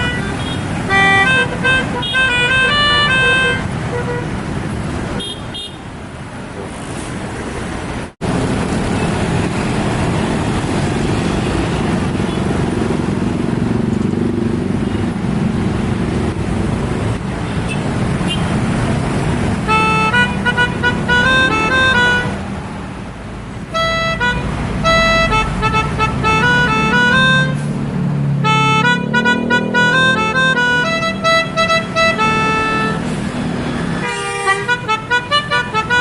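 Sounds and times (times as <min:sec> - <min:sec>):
bus horn playing a melody: 0:00.0 - 0:04.4, 0:19.6 - 0:22.4, 0:23.6 - 0:33.2, 0:34.0 - 0:36.0
bus engine and traffic rumble: 0:00.0 - 0:36.0.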